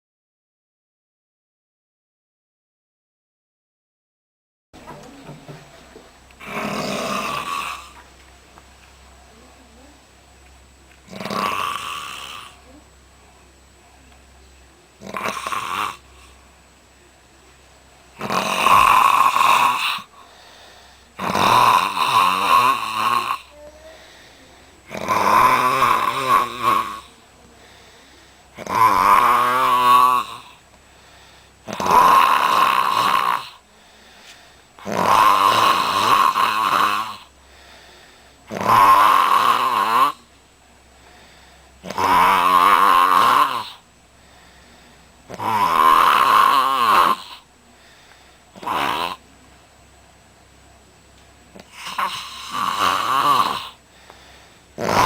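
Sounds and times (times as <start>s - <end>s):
loud whistly snoring: 6.4s - 7.9s, 18.2s - 20.1s, 21.2s - 23.4s, 48.6s - 49.2s, 51.8s - 53.8s
person snoring: 6.4s - 8.0s, 11.1s - 12.6s, 15.0s - 16.4s, 18.2s - 40.3s, 41.1s - 43.8s, 44.4s - 49.2s, 51.6s - 55.0s
quiet breathing: 16.0s - 18.0s, 19.7s - 25.0s, 25.9s - 28.7s, 29.7s - 31.8s, 33.3s - 34.9s, 35.7s - 38.6s, 40.2s - 42.0s, 43.7s - 45.4s, 47.2s - 49.3s, 51.6s - 54.8s.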